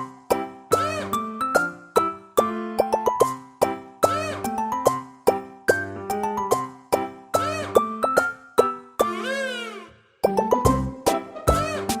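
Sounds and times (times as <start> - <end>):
playful plucked music with bass: 10.3 - 12.0.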